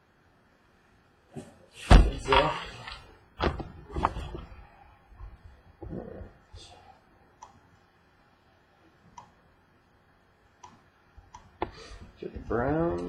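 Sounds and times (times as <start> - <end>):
computer mouse clicks: 7.4 - 7.6, 9.1 - 9.4, 10.6 - 11.6.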